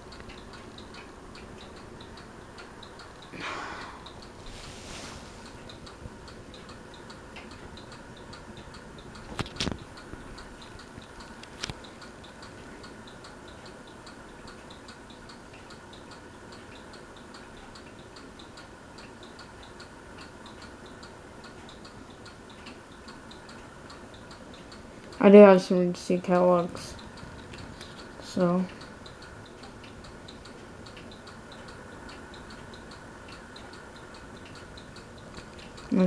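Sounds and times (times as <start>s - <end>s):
light ticking: 0.0s - 4.4s, 5.4s - 36.0s
ceiling fan motor hum: 0.0s - 36.0s.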